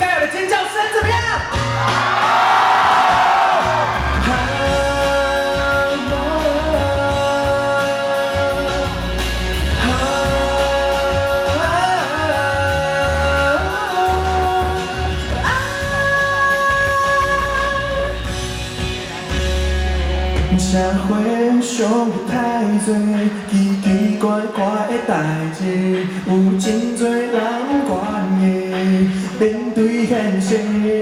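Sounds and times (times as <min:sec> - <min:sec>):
live band playing: 0:00.0 - 0:31.0
crowd screaming: 0:01.5 - 0:05.0.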